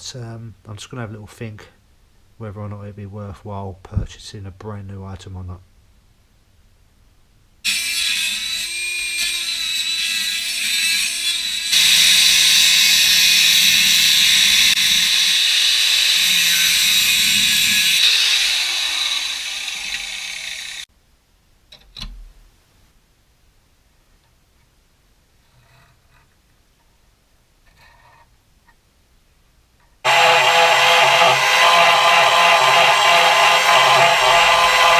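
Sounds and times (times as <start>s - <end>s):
power tool on sheet metal: 7.7s - 20.9s, 30.1s - 34.9s.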